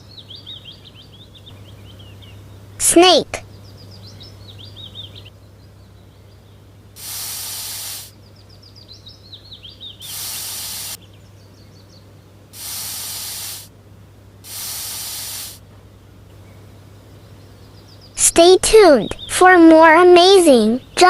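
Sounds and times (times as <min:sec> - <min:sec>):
small birds chirping faintly: 0:00.0 - 0:21.0
snake hissing: 0:07.0 - 0:08.2, 0:10.0 - 0:11.0, 0:12.6 - 0:13.7, 0:14.4 - 0:15.6.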